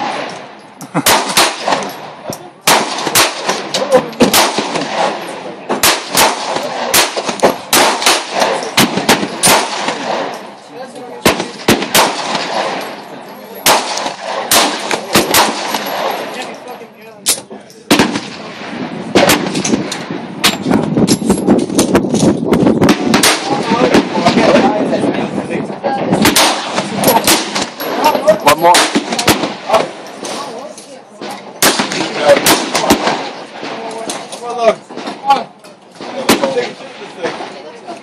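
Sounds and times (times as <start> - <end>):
handgun shots: 13.6 - 16.2.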